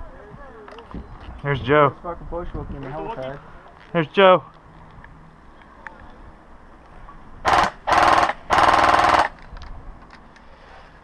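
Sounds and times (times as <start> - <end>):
airsoft gun automatic bursts: 7.4 - 9.4.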